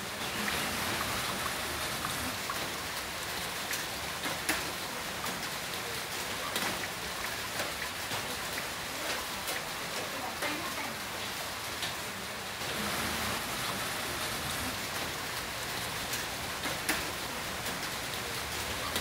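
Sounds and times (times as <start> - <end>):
heavy rain hiss: 0.0 - 19.0.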